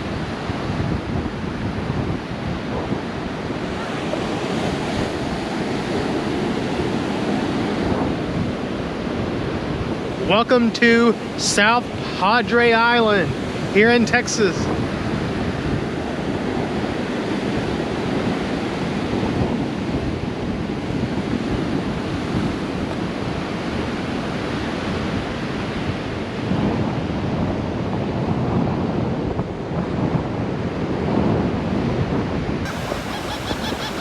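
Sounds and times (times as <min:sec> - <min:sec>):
surf washing on beach: 0:00.0 - 0:10.3, 0:32.7 - 0:34.0
wind buffeting microphone: 0:32.6 - 0:34.0
birds calling high cries: 0:32.7 - 0:34.0.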